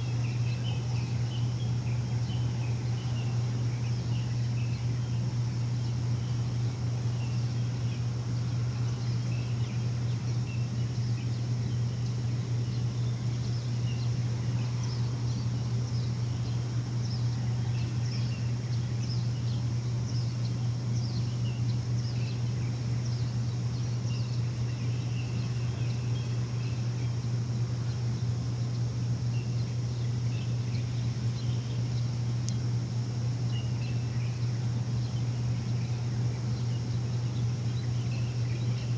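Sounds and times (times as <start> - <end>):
low machine hum: 0.0 - 38.9
small birds chirping: 0.0 - 38.9.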